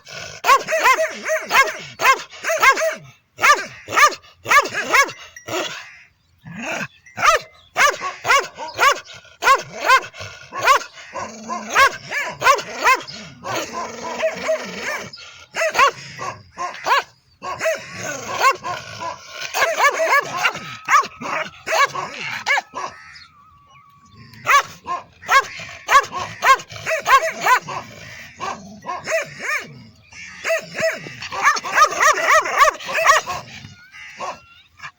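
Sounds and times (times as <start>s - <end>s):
dog barking: 0.4s - 5.8s, 7.2s - 23.0s, 24.4s - 29.8s, 30.4s - 34.4s.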